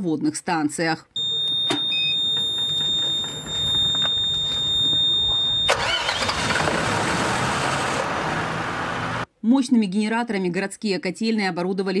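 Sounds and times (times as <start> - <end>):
generator engine hum: 1.2 - 9.3.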